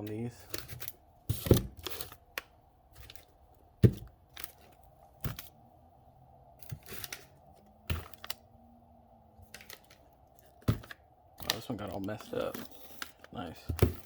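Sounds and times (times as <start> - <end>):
cardboard tubes knocking and rustling: 0.0 - 5.6, 9.4 - 14.0.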